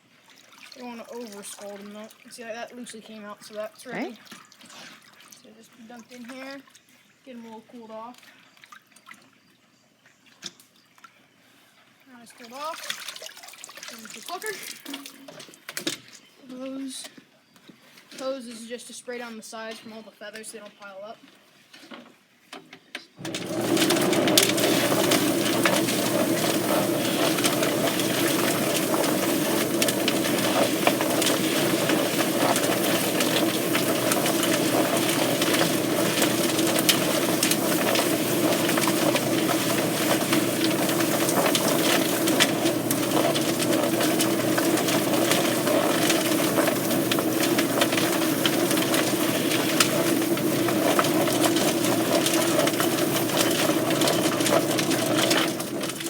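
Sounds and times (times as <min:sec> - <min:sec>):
hose spraying water: 0:23.2 - 0:56.0
poultry plucker machine drone: 0:23.2 - 0:56.0.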